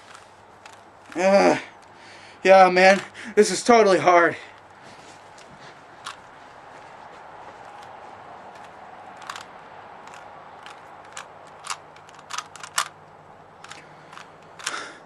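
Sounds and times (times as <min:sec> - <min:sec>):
puzzle cube clicking: 0:08.6 - 0:13.0, 0:13.6 - 0:15.0.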